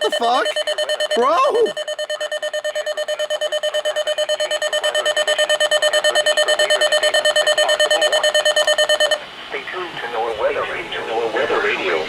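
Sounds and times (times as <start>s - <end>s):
radio alarm fast buzzy beeping: 0.0s - 9.2s.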